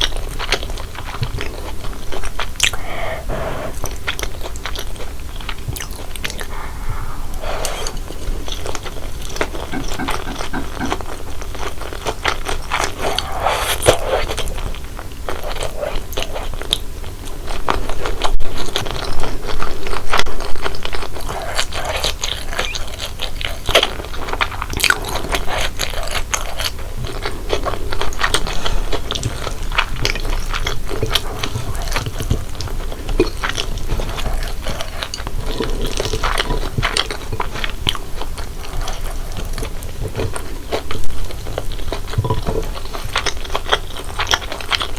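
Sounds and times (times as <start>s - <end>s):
chewing noodles: 0.0s - 44.9s.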